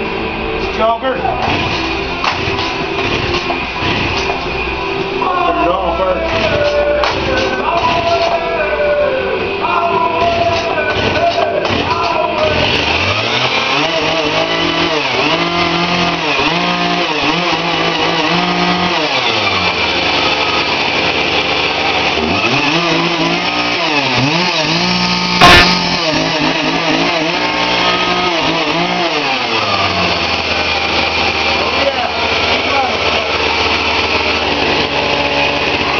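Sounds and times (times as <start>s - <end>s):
chainsaw engine revving: 1.3s - 8.5s, 10.1s - 35.9s
sharp knock: 25.4s - 26.0s.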